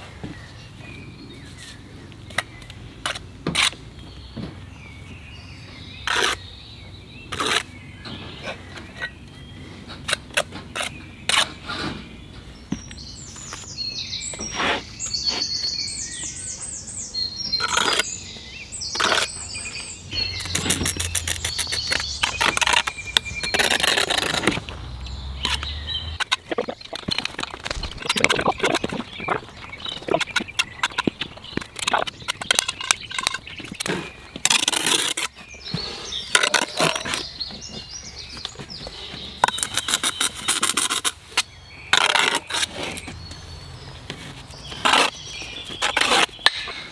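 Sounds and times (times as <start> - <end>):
bird chirping: 10.7 - 46.9
trowel tapping and scraping bricks: 18.9 - 19.4, 20.1 - 43.2, 44.1 - 46.9.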